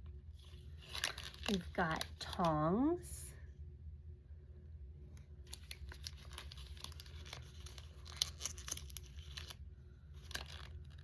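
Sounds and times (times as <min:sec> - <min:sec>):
plastic packaging crinkling: 0:00.3 - 0:02.6, 0:05.4 - 0:11.0.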